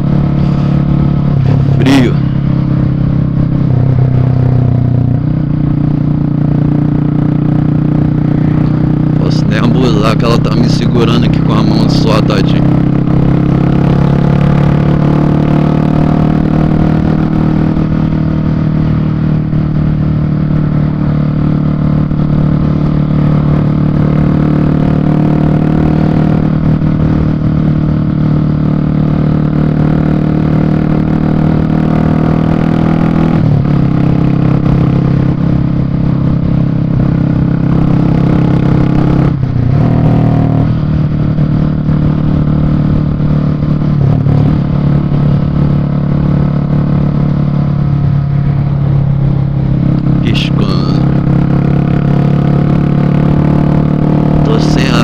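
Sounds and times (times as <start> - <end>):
motorcycle engine through loud exhaust: 0.0 - 55.0.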